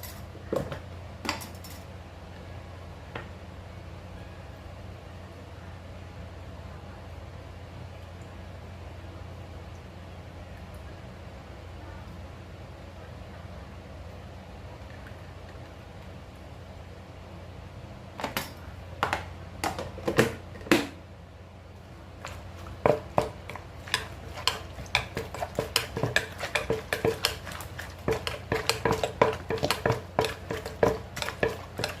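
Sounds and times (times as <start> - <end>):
pestle pounding in a mortar: 22.2 - 32.0.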